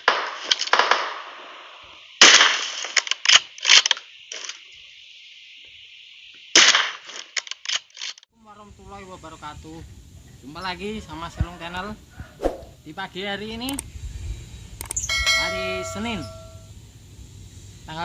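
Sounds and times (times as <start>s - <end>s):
sharp cracks and snaps: 0.0s - 4.8s, 6.3s - 8.3s, 13.6s - 13.9s, 14.8s - 15.0s.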